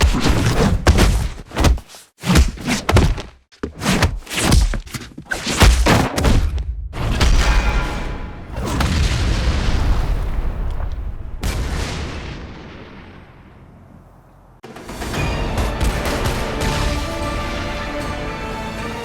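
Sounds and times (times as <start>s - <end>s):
sharp fight hits: 0.0s - 9.1s
background music: 14.6s - 19.0s.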